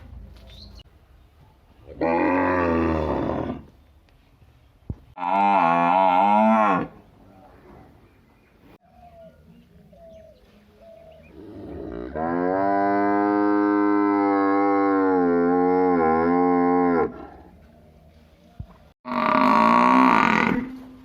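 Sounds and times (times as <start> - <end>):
cow mooing: 19.1 - 21.0.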